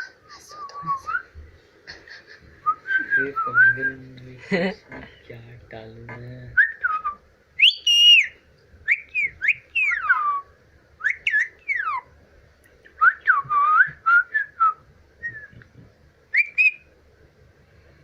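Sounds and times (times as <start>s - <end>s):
parrot whistling: 6.6s - 10.4s, 11.0s - 12.1s, 16.3s - 16.9s.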